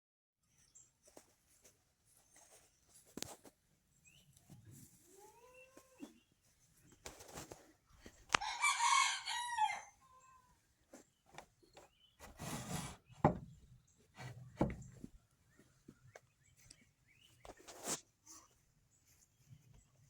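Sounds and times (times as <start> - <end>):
rooster crowing: 8.4 - 10.3
soft knocks and rustles: 10.9 - 16.8.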